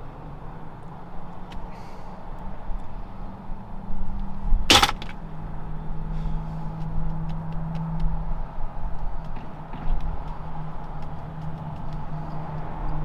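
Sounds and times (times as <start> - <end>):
car door shutting: 4.7 - 5.1.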